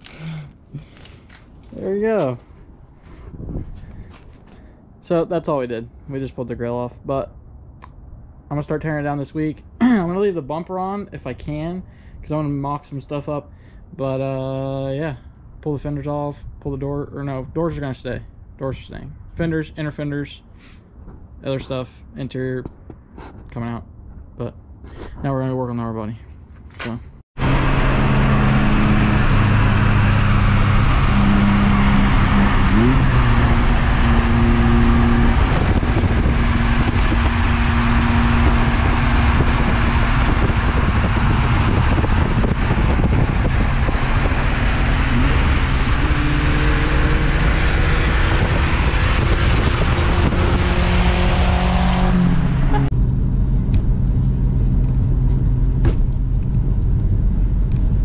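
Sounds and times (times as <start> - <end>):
road noise: 0.0 - 58.0
pickup engine revving: 27.4 - 55.8.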